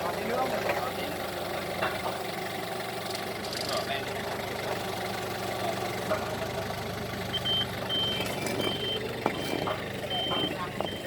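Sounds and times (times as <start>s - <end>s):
machine engine idling: 0.0s - 11.0s
high electronic warning beeps: 7.3s - 9.1s, 10.0s - 11.0s.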